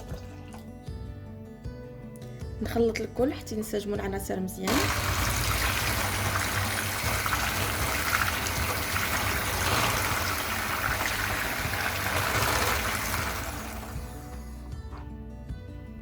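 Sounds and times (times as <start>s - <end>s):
liquid churning in a bowl: 4.7s - 14.4s.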